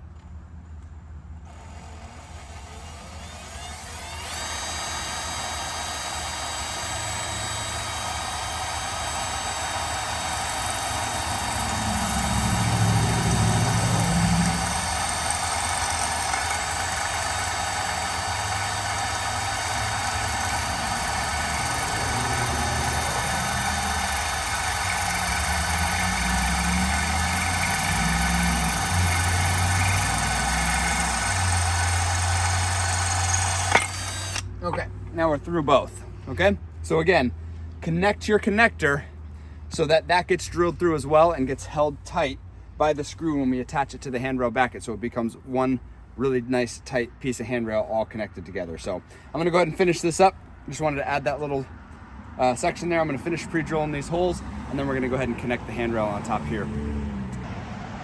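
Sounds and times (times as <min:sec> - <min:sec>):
power drill whining: 0:01.4 - 0:35.4.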